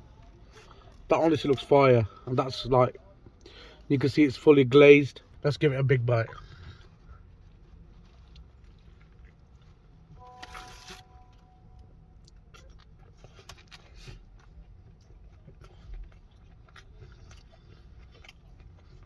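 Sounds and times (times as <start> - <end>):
wet chewing and mouth smacks: 6.3 - 19.0
crunchy bite of burger: 12.1 - 19.0.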